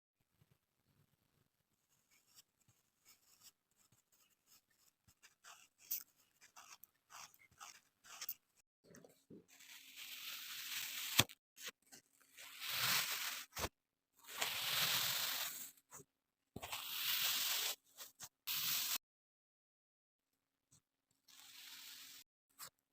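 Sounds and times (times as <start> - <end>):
sand crackling and rustling: 12.3 - 13.7, 14.3 - 15.7.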